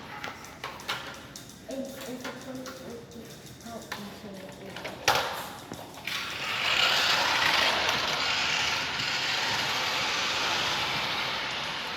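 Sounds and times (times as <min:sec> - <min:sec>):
toy car motor whirring: 0:05.8 - 0:11.9.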